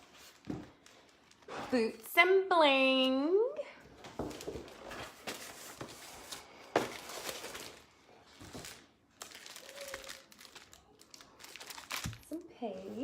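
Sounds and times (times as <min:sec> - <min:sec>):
packaging crinkling: 0:00.0 - 0:01.7, 0:04.2 - 0:12.5.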